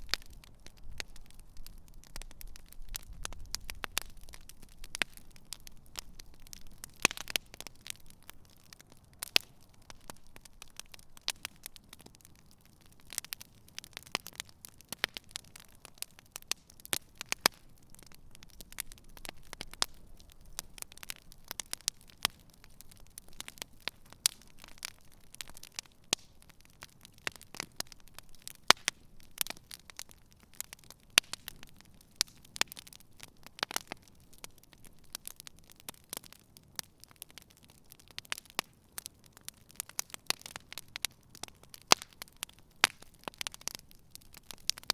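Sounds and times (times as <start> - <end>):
campfire crackling: 0.0 - 44.9.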